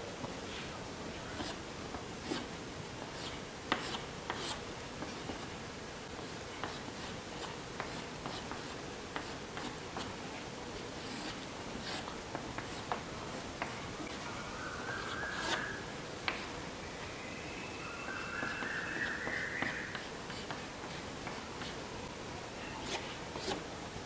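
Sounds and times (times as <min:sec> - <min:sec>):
faint steady hum: 0:00.0 - 0:24.0
chalk tapping and scratching: 0:02.2 - 0:02.5, 0:03.1 - 0:05.5, 0:06.2 - 0:10.2, 0:10.8 - 0:14.3, 0:15.0 - 0:16.6, 0:18.1 - 0:21.8, 0:22.8 - 0:23.6.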